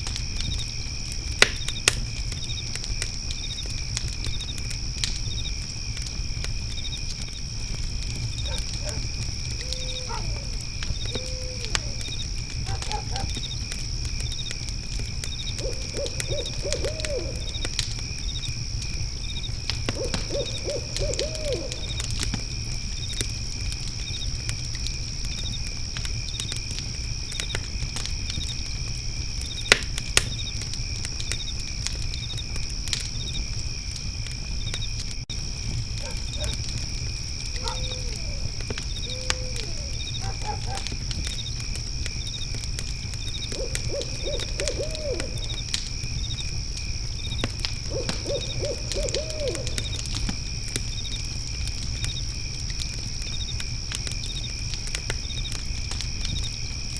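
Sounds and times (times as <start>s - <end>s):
crickets trilling: 0.0s - 56.9s
fire crackling and popping: 0.0s - 56.9s
owl hooting: 9.6s - 13.3s, 15.6s - 17.6s, 19.9s - 22.1s, 37.6s - 40.8s, 43.5s - 45.6s, 47.9s - 50.0s.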